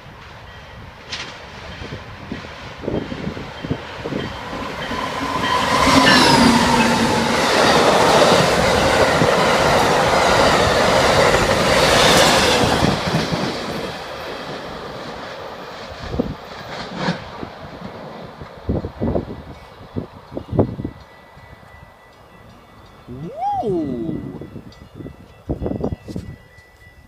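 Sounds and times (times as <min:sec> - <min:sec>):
brief falling tone: 0:23.1 - 0:24.5.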